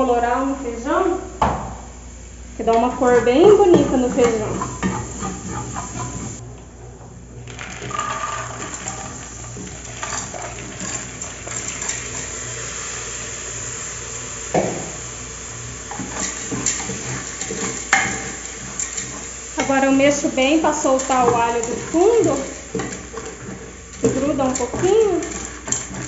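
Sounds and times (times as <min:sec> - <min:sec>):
garlic frying: 0:00.0 - 0:06.5, 0:07.3 - 0:26.0
spoon stirring in cooking pot: 0:02.8 - 0:06.4, 0:15.9 - 0:26.0.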